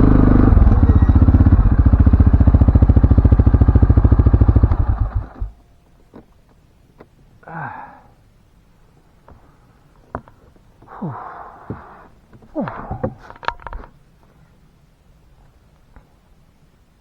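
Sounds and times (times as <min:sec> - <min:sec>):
atv engine idling: 0:00.0 - 0:05.6.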